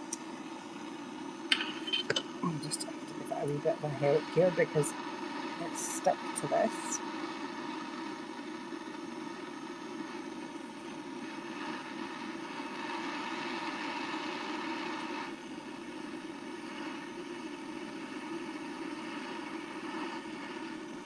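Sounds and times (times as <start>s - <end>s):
blowtorch flame hissing: 2.7s - 21.0s.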